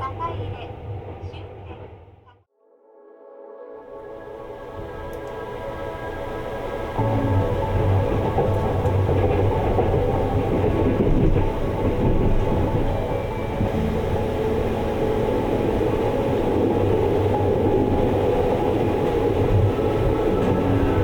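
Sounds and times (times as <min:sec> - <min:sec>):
train wheels rumbling on track: 0:04.4 - 0:21.0.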